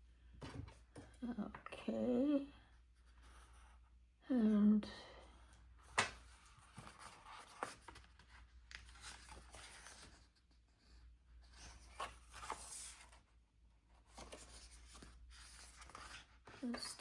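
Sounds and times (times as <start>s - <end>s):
paper rustling: 5.8s - 13.2s, 14.0s - 17.0s.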